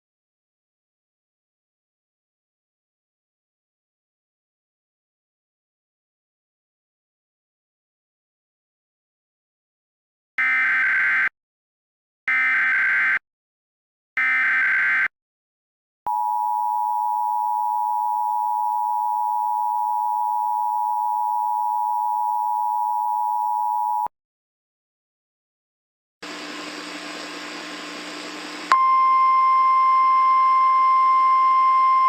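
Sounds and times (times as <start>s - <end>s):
two-tone attention signal: 28.7s - 32.0s.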